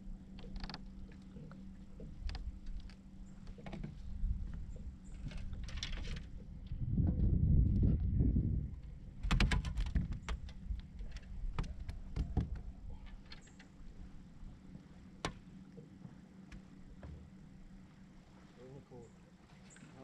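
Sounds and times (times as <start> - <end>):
low rumble: 0.0 - 18.6
sharp clicks and knocks: 9.2 - 13.7.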